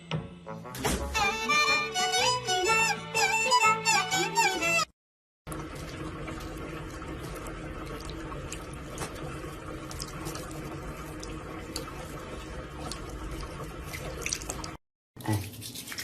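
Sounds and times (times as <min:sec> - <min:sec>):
running water: 0:05.5 - 0:16.0.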